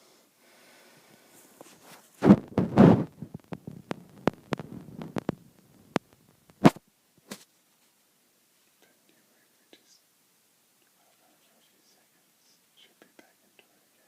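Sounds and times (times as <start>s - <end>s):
sharp clicks and crackles: 2.3s - 6.8s.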